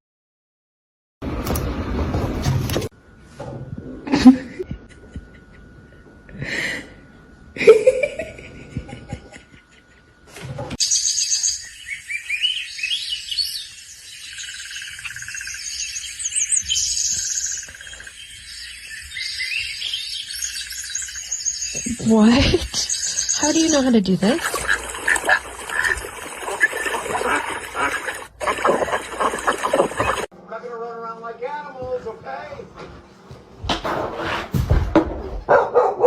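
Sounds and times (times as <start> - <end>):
birds chirping: 10.8 - 30.3
knocks and thumps: 33.6 - 35.5.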